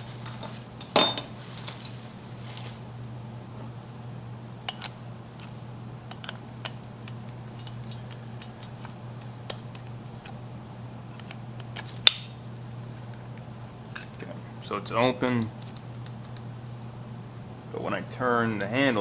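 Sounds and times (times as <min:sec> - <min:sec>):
furnace blower hum: 0:00.0 - 0:19.0.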